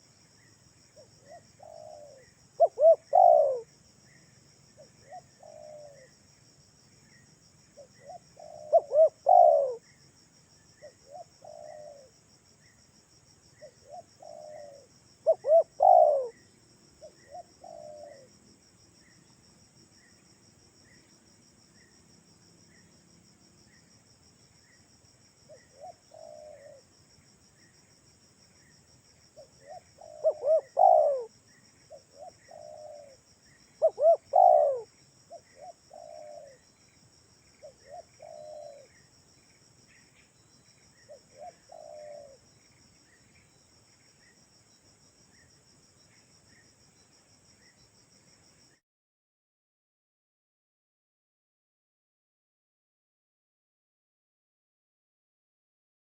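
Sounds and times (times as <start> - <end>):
dove cooing: 1.2 - 3.7, 4.8 - 6.1, 7.8 - 9.8, 10.8 - 12.1, 13.6 - 16.4, 17.0 - 18.3, 25.5 - 26.9, 29.4 - 31.3, 31.9 - 33.2, 33.8 - 36.6, 37.6 - 39.0, 41.1 - 42.4.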